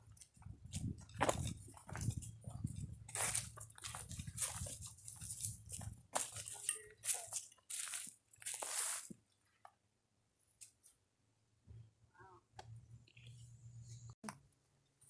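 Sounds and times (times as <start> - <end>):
crunching and rustling: 0.0 - 9.3.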